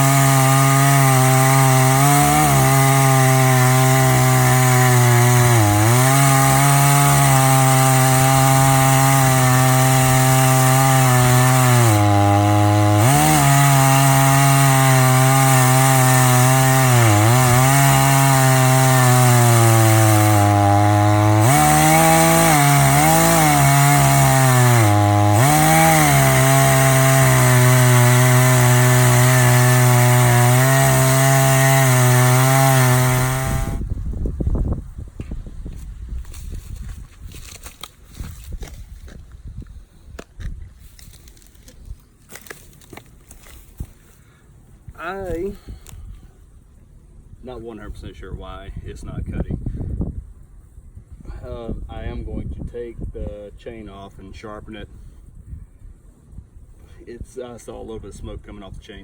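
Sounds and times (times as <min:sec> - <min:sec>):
chainsaw cutting through log: 0:00.0 - 0:33.9, 0:40.8 - 0:44.0.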